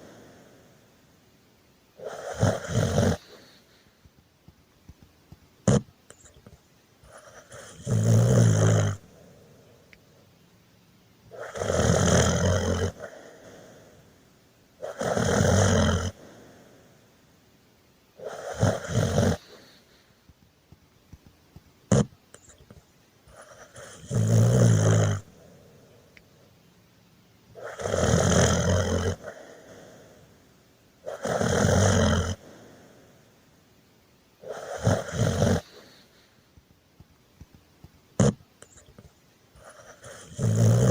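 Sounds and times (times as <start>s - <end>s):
loud snoring: 2.0s - 3.6s, 5.7s - 5.9s, 7.1s - 9.4s, 11.3s - 14.0s, 14.8s - 16.8s, 18.2s - 19.8s, 21.9s - 22.1s, 23.3s - 25.6s, 27.6s - 30.3s, 31.0s - 33.0s, 34.4s - 36.1s, 38.2s - 38.4s, 39.6s - 40.9s.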